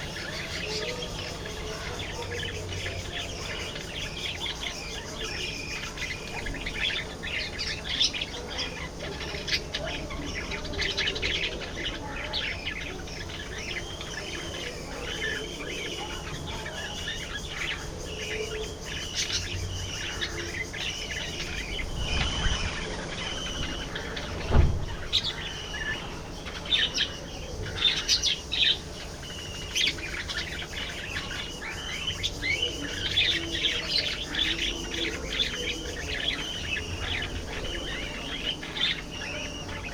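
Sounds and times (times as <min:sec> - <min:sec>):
budgerigars chirping and warbling: 0:00.0 - 0:39.9
thump: 0:24.3 - 0:25.1.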